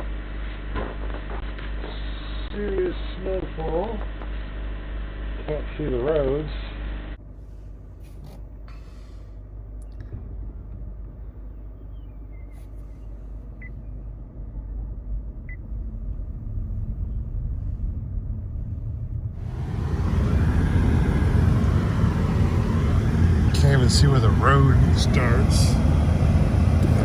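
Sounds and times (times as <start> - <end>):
car engine rumbling: 12.6 - 27.0
loud rushing noise: 19.4 - 27.0.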